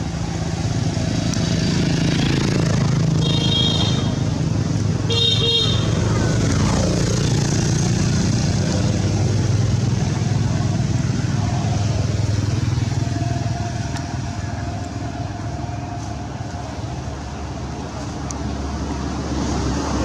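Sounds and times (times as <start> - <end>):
motorcycle engine passing: 0.0 - 15.7.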